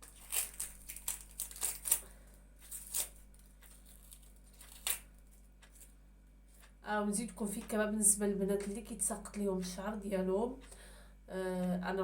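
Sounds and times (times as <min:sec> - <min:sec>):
onion skins crinkling and tearing: 0:00.0 - 0:06.8.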